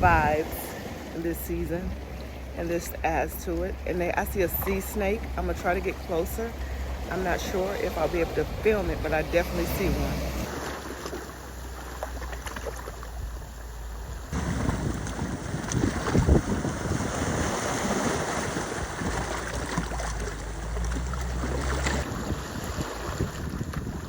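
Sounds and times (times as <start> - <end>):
wind buffeting the microphone: 0.0 - 0.7, 13.0 - 24.0
sea waves washing ashore: 0.0 - 24.0.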